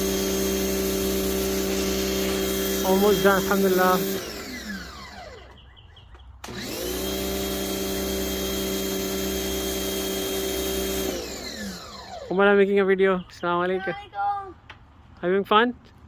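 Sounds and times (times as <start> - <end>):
pressure washer motor whine: 0.0 - 5.6, 6.4 - 12.5.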